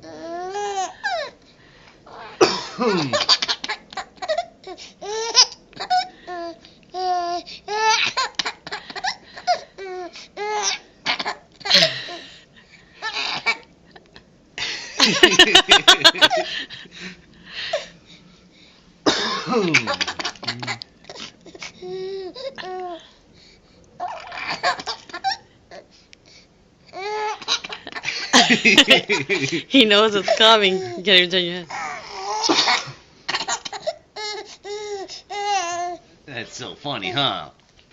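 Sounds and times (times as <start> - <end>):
man coughing: 2.4 - 3.6, 19.1 - 20.8, 32.4 - 33.9.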